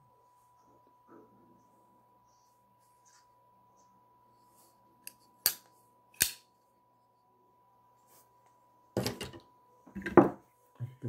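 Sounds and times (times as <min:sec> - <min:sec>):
pocket knife clicks and snaps: 0:05.0 - 0:06.4.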